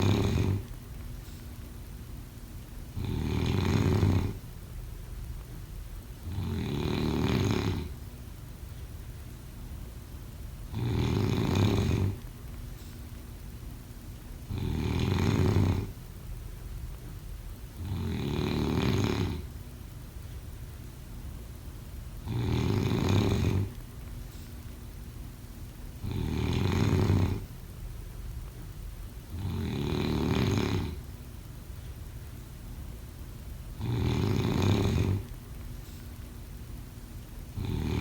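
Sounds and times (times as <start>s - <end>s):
person snoring: 0.0s - 0.6s, 3.0s - 4.4s, 6.3s - 8.0s, 10.7s - 12.2s, 14.5s - 16.0s, 17.8s - 19.5s, 22.2s - 23.7s, 26.0s - 27.5s, 29.3s - 31.0s, 33.8s - 35.3s, 37.6s - 38.0s.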